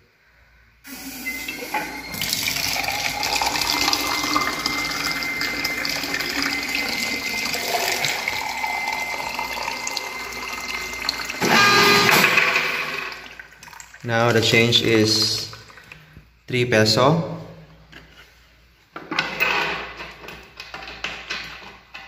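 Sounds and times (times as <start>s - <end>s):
thin high whine: 0.8s - 13.3s
water pouring into a cup: 1.7s - 11.4s, 12.6s - 16.0s.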